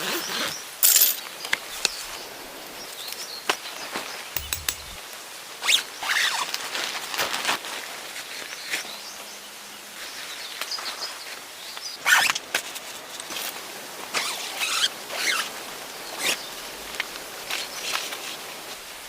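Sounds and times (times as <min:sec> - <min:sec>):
faint outdoor background: 0:00.0 - 0:06.4.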